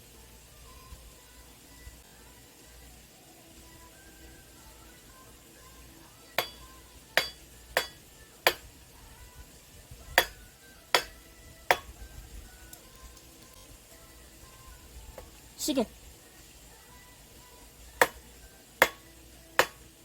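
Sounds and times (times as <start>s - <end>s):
hard objects clinking: 6.4s - 8.7s.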